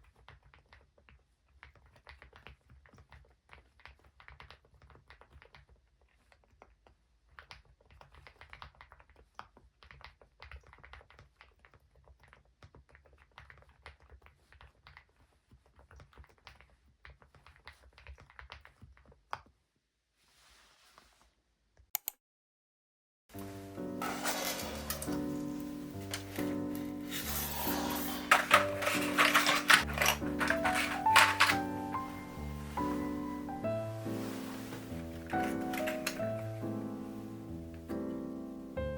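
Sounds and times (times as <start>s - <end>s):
sharp clicks: 22.0s - 22.2s
music: 23.3s - 38.9s
soft muted keyboard typing: 24.0s - 33.6s, 34.4s - 36.8s
faint hiss: 31.9s - 38.8s.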